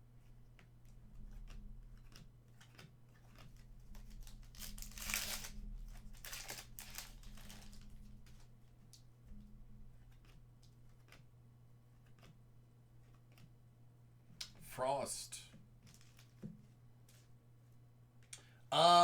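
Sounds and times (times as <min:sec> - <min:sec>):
card packaging rustling and crinkling: 0:04.0 - 0:08.1.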